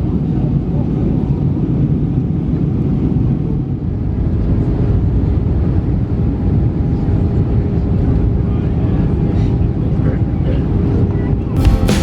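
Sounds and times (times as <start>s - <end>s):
engine rumble and airflow in cabin: 0.0s - 11.6s.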